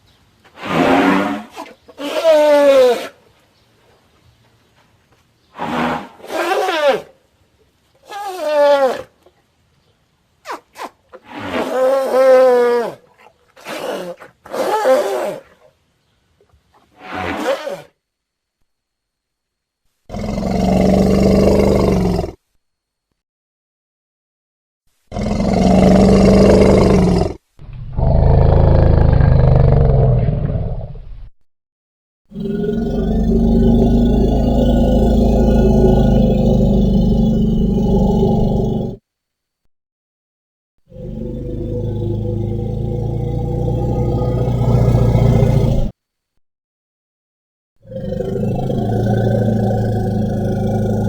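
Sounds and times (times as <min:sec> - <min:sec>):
elephant calling: 0:00.6 - 0:03.2, 0:08.0 - 0:09.1, 0:13.6 - 0:15.6, 0:17.0 - 0:18.0.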